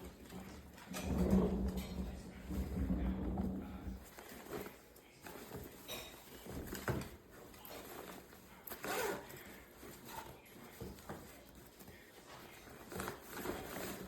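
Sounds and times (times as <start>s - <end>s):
suitcase scraping swishes: 0.0s - 4.6s.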